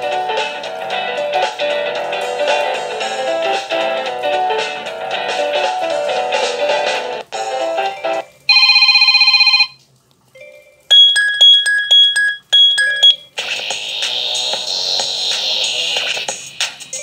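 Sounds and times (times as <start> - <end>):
phone ringtone tune: 8.0 - 9.8, 10.4 - 13.3
short phone melody: 8.0 - 9.8, 10.4 - 13.3
rapid repeating beeps: 10.9 - 13.3.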